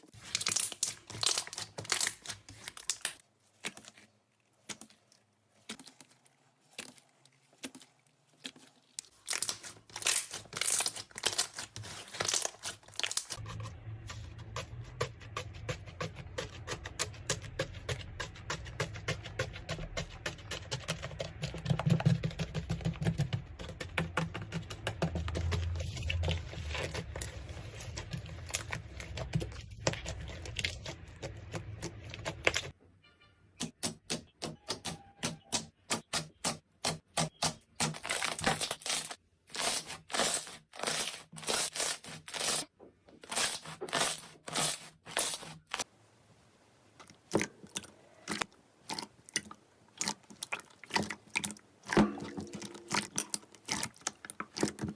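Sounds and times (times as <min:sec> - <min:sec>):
slime clicking and crackling: 0:00.2 - 0:13.4, 0:47.0 - 0:54.9.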